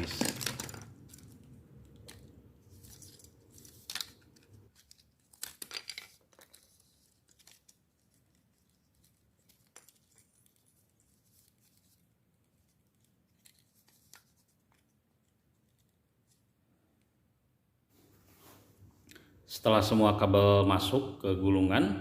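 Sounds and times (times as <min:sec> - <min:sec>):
ribbon cable rustling and clicking: 0:00.1 - 0:16.5.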